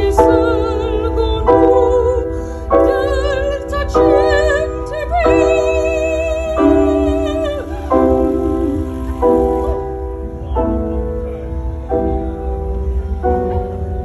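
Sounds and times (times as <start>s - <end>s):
operatic singing: 0.0s - 10.3s
keyboard chords: 0.0s - 14.0s.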